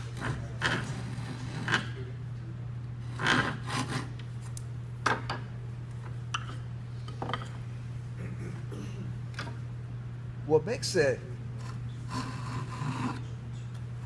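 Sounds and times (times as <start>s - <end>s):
steady low hum: 0.0s - 14.0s
hand tool scraping wood: 3.1s - 4.1s, 12.1s - 13.2s.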